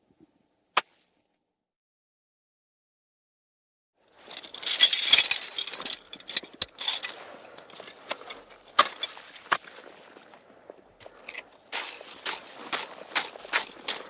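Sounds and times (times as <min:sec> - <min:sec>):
small pieces clinking and landing: 0:04.2 - 0:09.2.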